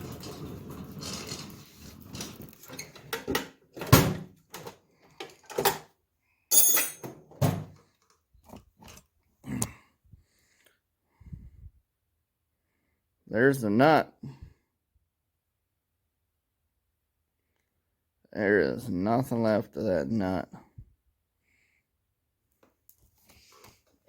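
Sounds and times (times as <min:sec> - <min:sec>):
tools and metal parts clunking: 0:00.0 - 0:05.9, 0:06.5 - 0:07.8.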